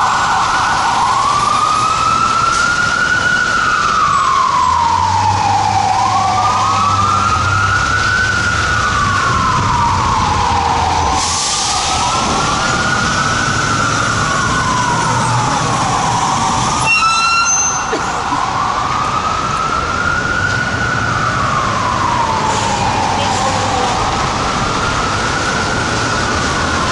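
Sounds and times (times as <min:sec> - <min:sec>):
diesel engine rumble: 0:00.0 - 0:16.9
fire truck sirens wailing: 0:00.0 - 0:26.9.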